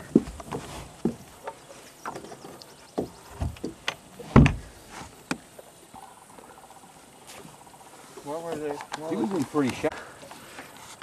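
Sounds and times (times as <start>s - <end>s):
knocks and clicks of fishing gear: 0.1s - 5.4s
heavy low thump: 4.3s - 4.8s.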